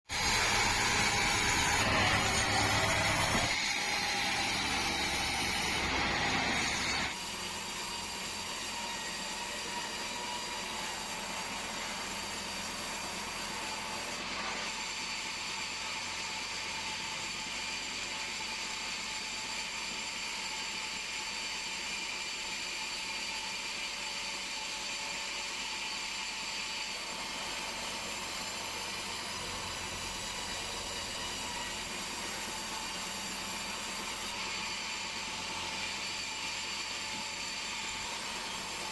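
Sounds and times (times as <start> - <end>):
band sawmill humming: 0.1 - 14.2.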